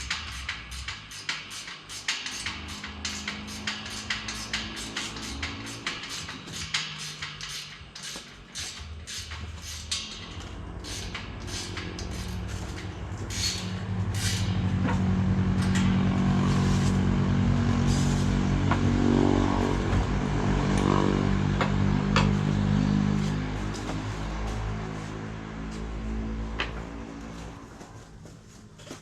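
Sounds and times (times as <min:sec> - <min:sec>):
engine running: 0:00.0 - 0:29.0.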